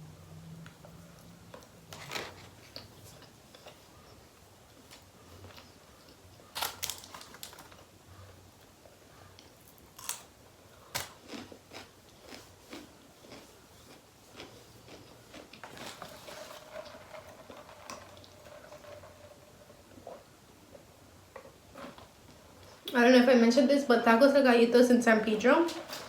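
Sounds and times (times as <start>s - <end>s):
person chewing and biting: 5.4s - 7.5s, 9.4s - 16.2s.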